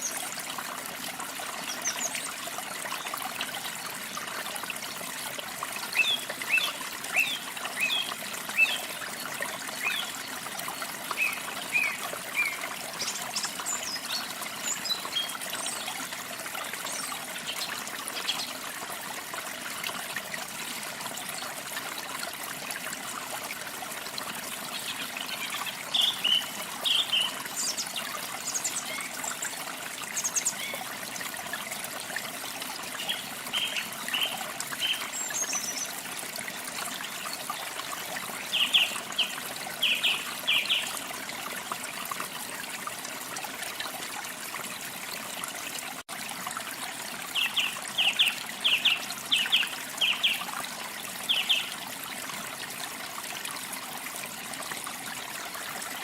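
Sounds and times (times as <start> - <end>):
water trickling: 0.0 - 56.0.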